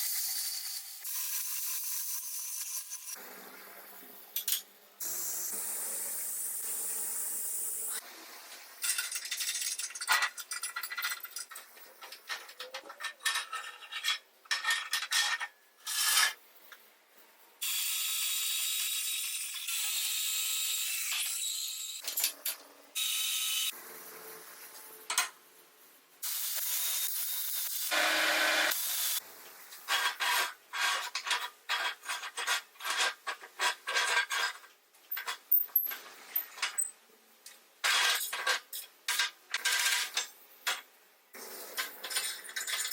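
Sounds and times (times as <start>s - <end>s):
clicks and knocks of metal parts: 4.4s - 4.7s, 8.8s - 16.8s, 22.0s - 22.7s, 25.1s - 25.4s, 29.7s - 41.0s, 41.7s - 42.9s.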